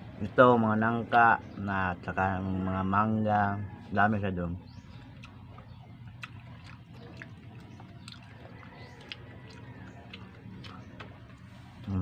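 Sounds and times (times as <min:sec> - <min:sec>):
low steady hum: 0:00.0 - 0:12.0
wet chewing mouth clicks: 0:04.8 - 0:11.9.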